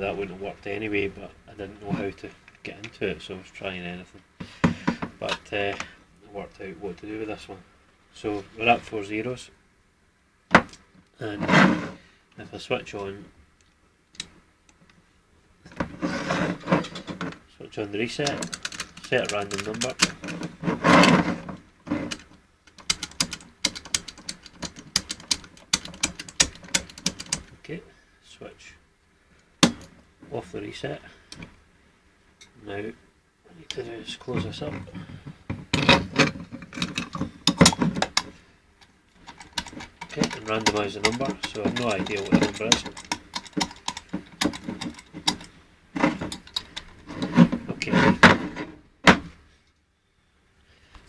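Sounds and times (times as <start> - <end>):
combination dial wheel clicks: 18.1 - 21.1, 22.1 - 27.6, 39.2 - 45.5, 46.3 - 47.0.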